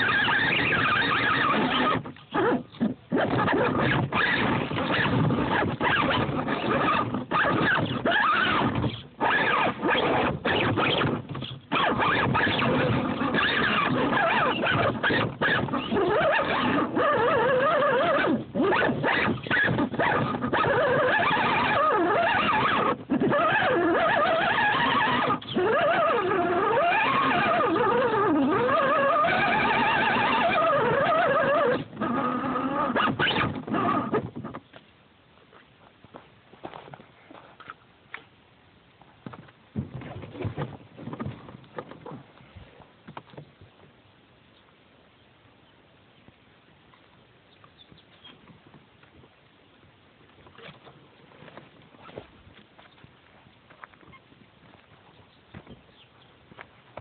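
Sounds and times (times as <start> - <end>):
electric motor and gears whining: 0.0 - 34.3.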